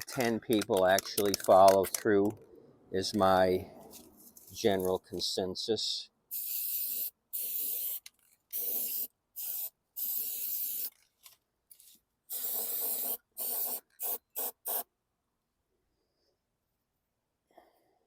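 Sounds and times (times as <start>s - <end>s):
spray paint can hissing: 6.3s - 11.0s, 12.3s - 14.9s.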